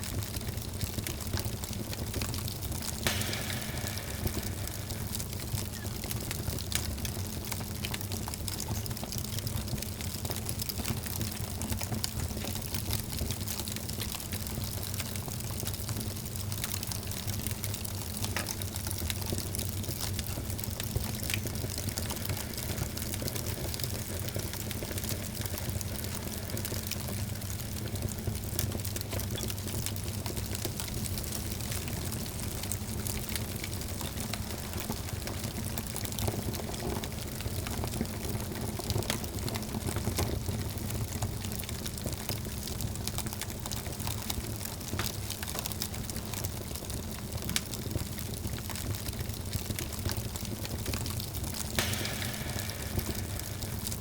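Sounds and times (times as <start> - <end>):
wood fire crackling: 0.0 - 54.0
low rumble: 3.1 - 6.3, 20.2 - 28.6, 51.8 - 54.0.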